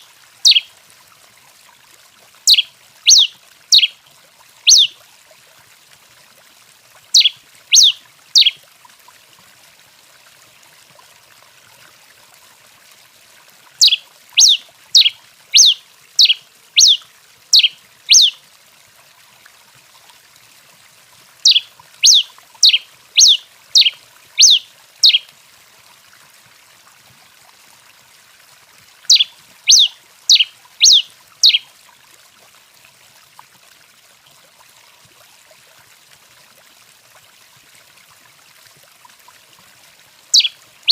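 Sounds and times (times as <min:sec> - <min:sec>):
finch singing sharp falling notes: 0:02.5 - 0:03.9, 0:04.7 - 0:04.9, 0:07.2 - 0:08.5, 0:13.8 - 0:17.0, 0:17.6 - 0:18.4, 0:21.5 - 0:25.2, 0:29.1 - 0:31.6, 0:40.4 - 0:40.9.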